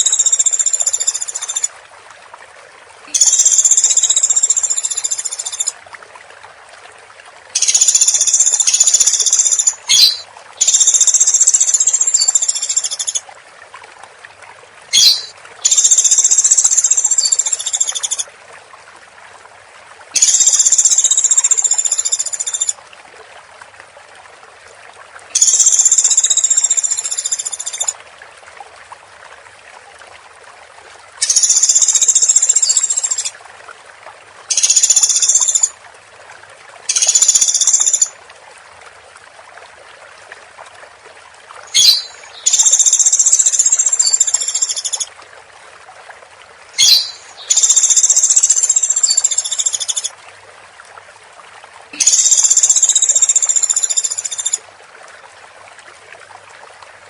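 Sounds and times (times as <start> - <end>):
woodpecker calling: 7.6 - 13.0, 14.9 - 18.1, 41.7 - 45.0, 46.8 - 50.0.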